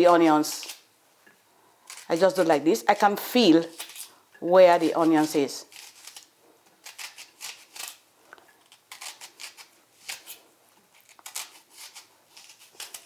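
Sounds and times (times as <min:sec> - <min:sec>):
knife slicing onion: 0:00.0 - 0:00.9, 0:01.8 - 0:08.0, 0:08.6 - 0:13.0.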